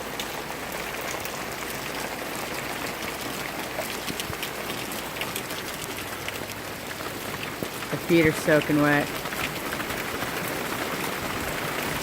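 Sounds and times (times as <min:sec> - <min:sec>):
raindrop ticks: 0:00.1 - 0:12.0.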